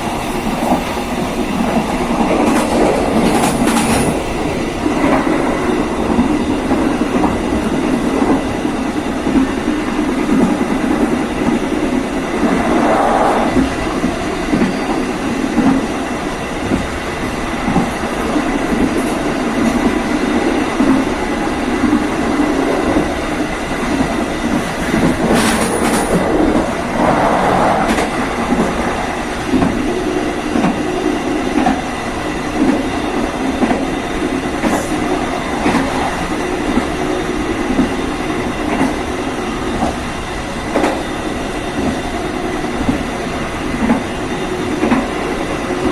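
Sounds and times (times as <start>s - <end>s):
train wheels rumbling: 0.0s - 45.9s
wheels clacking over rail joints: 13.5s - 29.9s.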